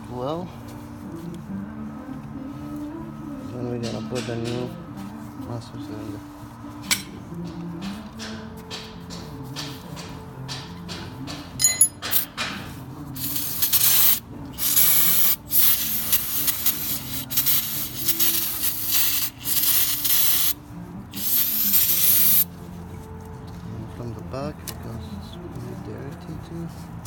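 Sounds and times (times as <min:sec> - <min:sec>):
aerosol spray hissing: 0:13.2 - 0:22.5.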